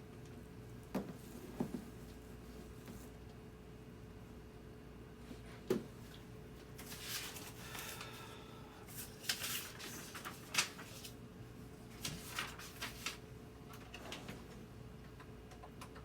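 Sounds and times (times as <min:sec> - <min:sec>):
faint steady hum: 0:00.0 - 0:16.0
objects rustling and knocking: 0:00.9 - 0:02.1.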